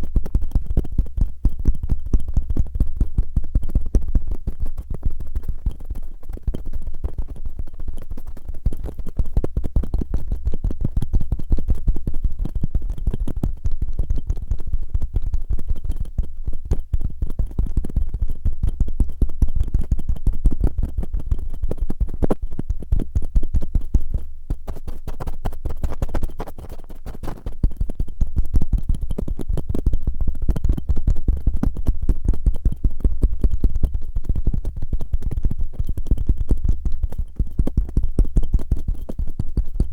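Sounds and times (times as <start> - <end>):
cotton swabs scratching microphone: 21.0 - 30.0.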